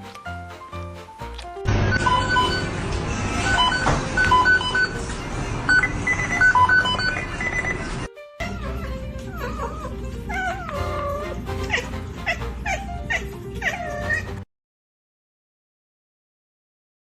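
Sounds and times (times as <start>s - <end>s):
background music with bright notes: 0.0s - 7.4s, 8.0s - 14.4s
kitten mewing: 8.4s - 14.5s.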